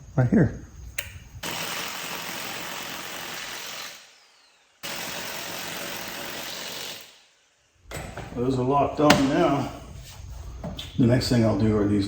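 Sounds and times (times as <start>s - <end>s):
impact wrench running: 1.4s - 7.3s.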